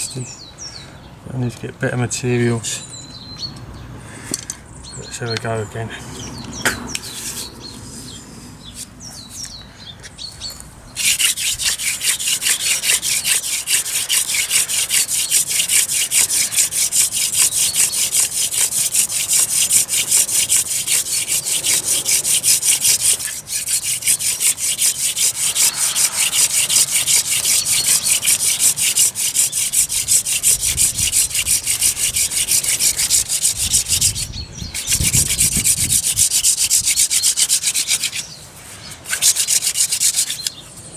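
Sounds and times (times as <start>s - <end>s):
wooden hand drill rubbing wood: 7.0s - 8.2s, 10.5s - 40.6s.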